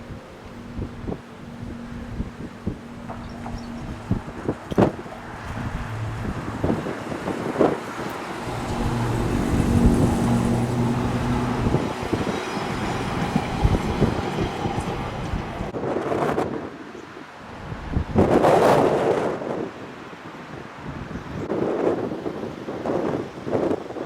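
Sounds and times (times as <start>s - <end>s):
passing vehicle motor hum: 0.0s - 15.8s
street noise: 0.0s - 18.8s
wind buffeting microphone: 0.0s - 24.0s.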